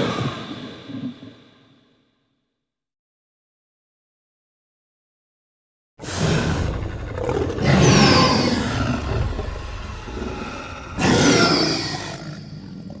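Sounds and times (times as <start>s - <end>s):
deep rough dinosaur roar: 6.0s - 12.3s.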